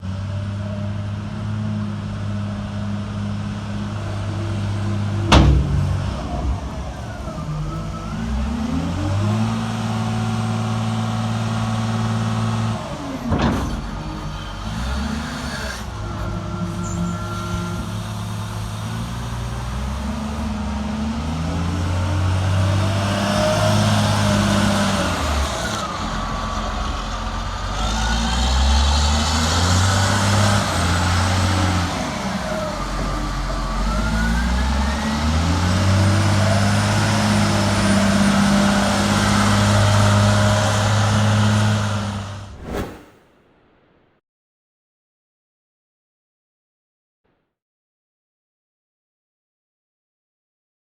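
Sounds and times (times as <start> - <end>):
diesel engine revving: 0.0 - 42.5
sharp knocks: 5.3 - 8.6.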